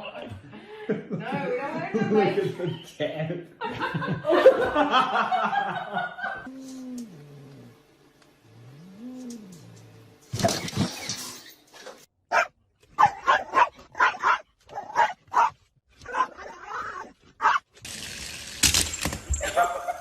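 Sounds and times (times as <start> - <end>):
dog barking: 12.3 - 16.6, 17.4 - 17.6.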